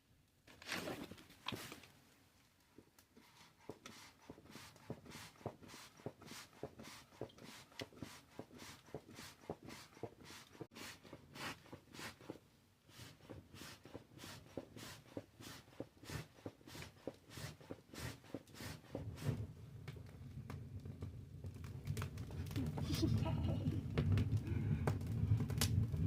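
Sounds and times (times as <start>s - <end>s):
hand bellows puffing air: 3.2s - 19.5s.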